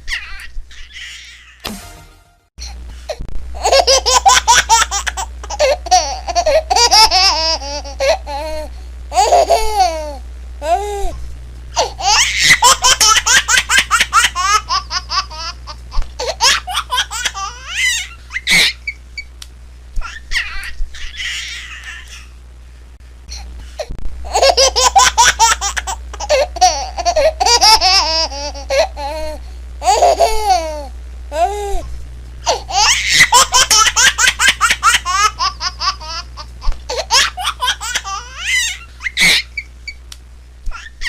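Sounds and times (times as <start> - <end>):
baby laughing and squealing: 0.0 - 1.6, 3.6 - 10.8, 11.8 - 15.6, 16.2 - 19.0, 20.0 - 22.3, 24.3 - 31.8, 32.5 - 40.0, 40.7 - 41.0
low hum: 1.6 - 16.4, 25.9 - 34.0.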